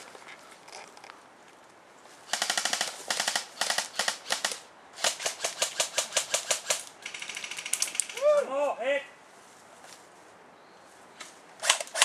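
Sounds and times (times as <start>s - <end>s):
airsoft gun firing bursts: 2.3s - 8.1s, 11.6s - 12.0s.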